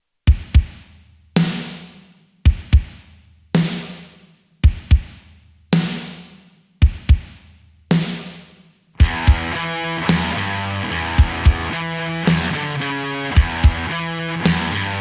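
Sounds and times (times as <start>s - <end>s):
bass drum kicks: 9.0s - 9.6s, 11.2s - 11.7s, 13.4s - 13.9s.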